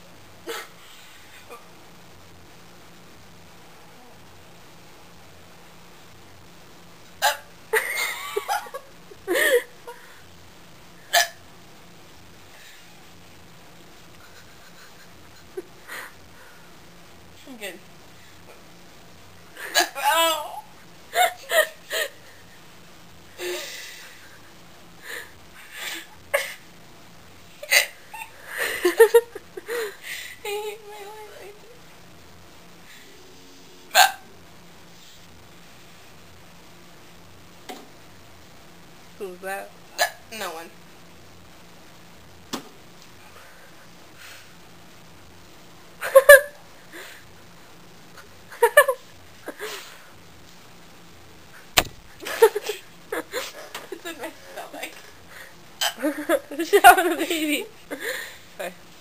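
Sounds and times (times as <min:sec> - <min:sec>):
woman hiccuping: 0:07.2 - 0:07.5, 0:11.1 - 0:11.4, 0:19.7 - 0:20.0, 0:33.9 - 0:34.3, 0:40.0 - 0:40.3, 0:55.8 - 0:56.0
breath: 0:43.4 - 0:44.6, 0:58.0 - 0:58.5.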